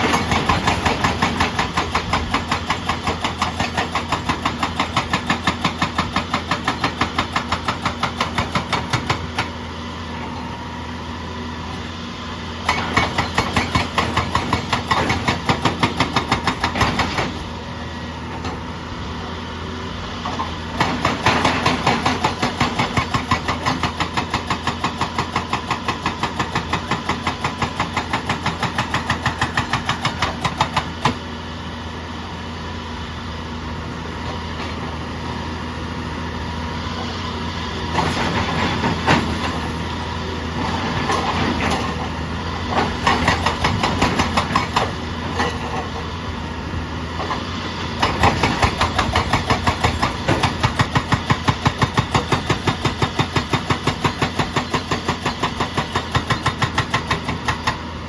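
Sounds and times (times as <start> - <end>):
hydraulic breaker hammering: 0.0 - 9.6, 12.6 - 17.5, 20.3 - 31.2, 40.6 - 46.2, 47.2 - 57.9
diesel engine running: 0.0 - 58.0.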